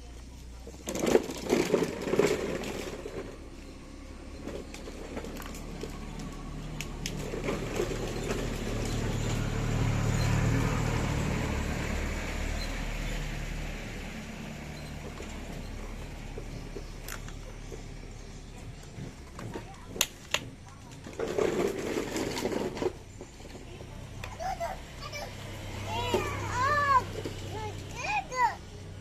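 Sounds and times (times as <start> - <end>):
excavator motor humming: 0.2 - 19.9.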